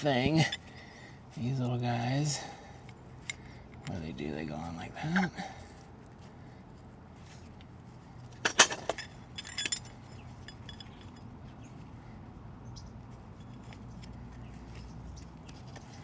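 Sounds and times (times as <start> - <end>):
small metal parts clinking: 0.1 - 1.0, 8.2 - 11.3.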